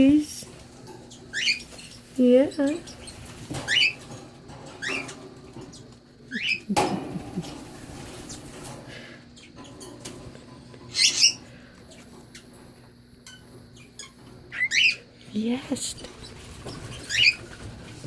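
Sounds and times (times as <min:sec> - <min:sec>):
baby parrots chirping: 0:01.0 - 0:04.1, 0:04.8 - 0:06.7, 0:10.9 - 0:12.5, 0:13.2 - 0:15.1, 0:15.9 - 0:17.7.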